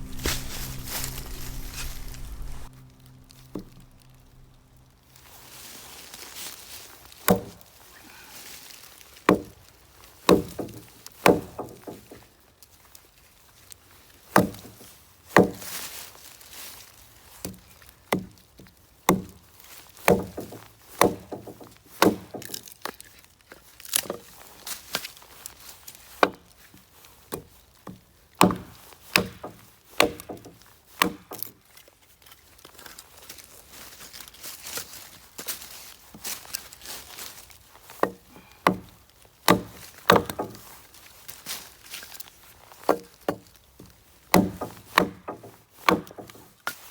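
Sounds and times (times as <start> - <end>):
firewood being chopped: 0.0 - 4.6, 7.3 - 7.6, 9.2 - 9.6, 10.3 - 12.1, 14.3 - 14.8, 15.4 - 15.8, 19.1 - 19.4, 20.0 - 23.0, 27.3 - 31.6, 38.0 - 40.7, 44.3 - 46.5.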